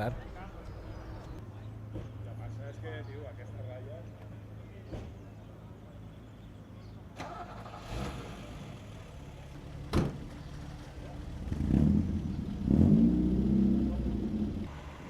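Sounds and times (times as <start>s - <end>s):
car engine revving: 11.0s - 15.0s.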